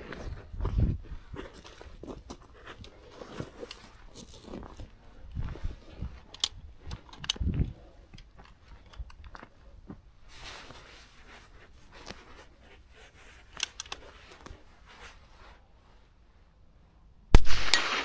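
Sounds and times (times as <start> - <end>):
rustling: 10.2 - 16.1.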